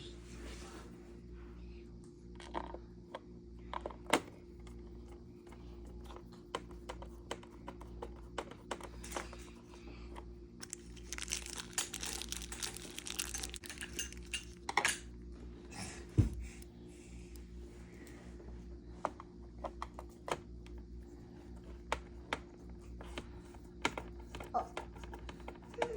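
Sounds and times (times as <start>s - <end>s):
low electrical hum: 0.0s - 25.9s
crinkly rattling: 10.6s - 15.0s.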